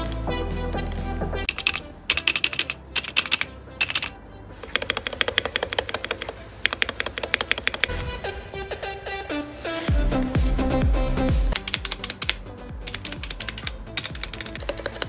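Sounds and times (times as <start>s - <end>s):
music: 0.0s - 15.0s
typing on mechanical keyboard: 1.5s - 7.9s, 11.6s - 15.0s.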